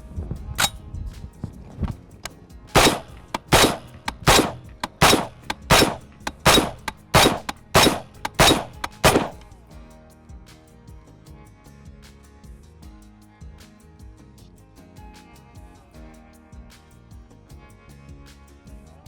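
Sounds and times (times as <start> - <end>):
rifle shots with echo: 2.8 - 9.5.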